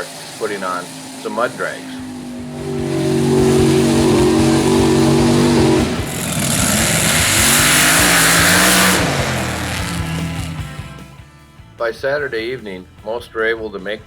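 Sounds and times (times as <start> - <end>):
loud hiss: 0.0 - 11.1
truck engine revving hard: 0.0 - 11.3.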